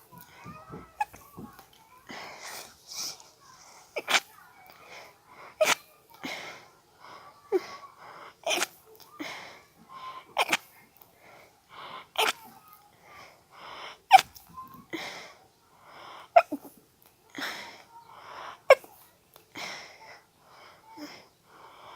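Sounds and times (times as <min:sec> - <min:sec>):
person stifling sneezes: 0:04.0 - 0:04.3, 0:05.6 - 0:05.8, 0:08.4 - 0:08.8, 0:10.4 - 0:10.7, 0:12.2 - 0:12.5.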